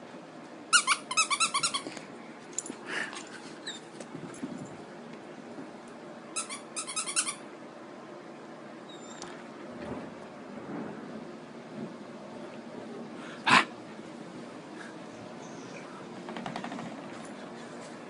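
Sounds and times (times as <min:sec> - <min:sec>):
squeaky dog toy squeaking: 0:00.7 - 0:01.9, 0:06.4 - 0:07.4.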